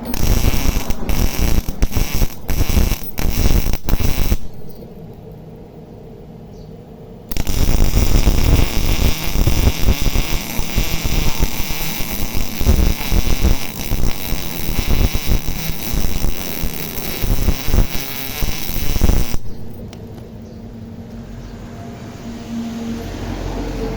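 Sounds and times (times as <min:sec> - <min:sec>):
welder humming: 0:00.0 - 0:05.4, 0:07.3 - 0:20.4
welding arc sizzling: 0:00.0 - 0:05.4, 0:07.3 - 0:20.4.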